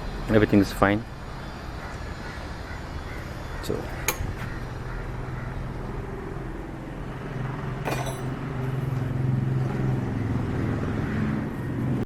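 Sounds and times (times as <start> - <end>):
metallic clink: 7.9 - 8.4.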